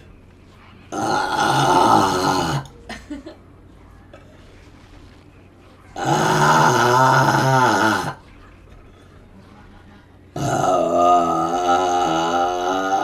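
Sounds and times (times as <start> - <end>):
woman burping loudly: 0.9 - 2.7, 6.0 - 8.2, 10.4 - 13.0.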